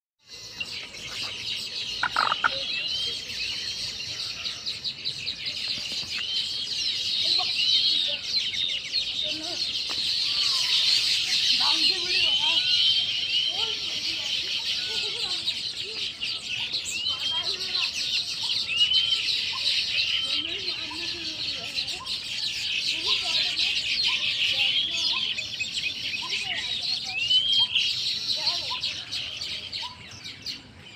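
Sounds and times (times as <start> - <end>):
small birds chirping: 0.2 - 30.9
bird call rising and falling: 0.3 - 20.4.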